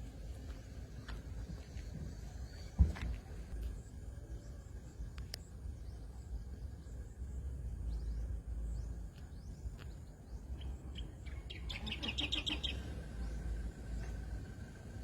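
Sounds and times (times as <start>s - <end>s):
birds chirping: 0.8s - 15.0s
bird trilling repeated notes: 11.0s - 12.9s.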